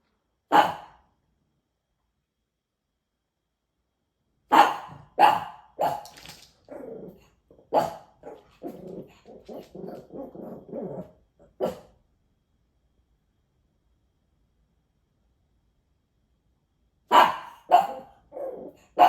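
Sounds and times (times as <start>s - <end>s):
dog barking sharply: 0.5s - 1.0s, 4.5s - 6.3s, 17.1s - 18.0s
dog grumbling: 6.7s - 11.8s, 18.3s - 19.0s.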